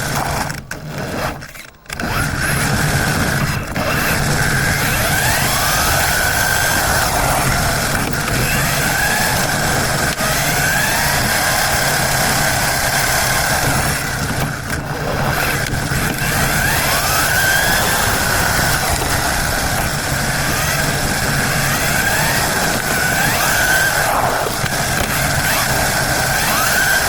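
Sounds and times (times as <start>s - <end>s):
constant rushing noise: 0.0s - 27.0s
rc car motor whining: 0.0s - 27.0s.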